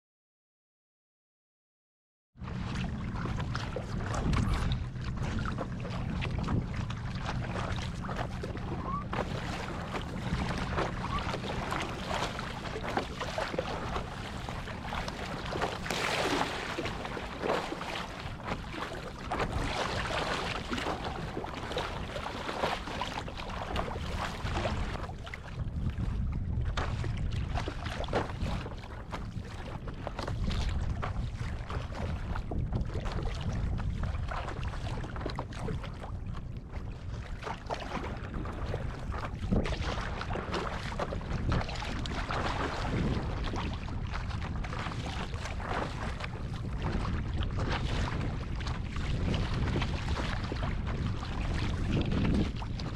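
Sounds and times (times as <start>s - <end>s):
gusting wind on microphone: 2.4s - 52.9s
water splashing: 2.6s - 25.7s, 37.3s - 52.9s.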